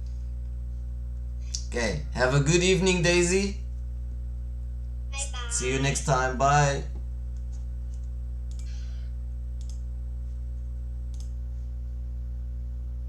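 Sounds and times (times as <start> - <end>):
low electrical hum: 0.0 - 13.0
faint clicks: 7.3 - 8.7, 9.6 - 9.8, 11.1 - 11.4.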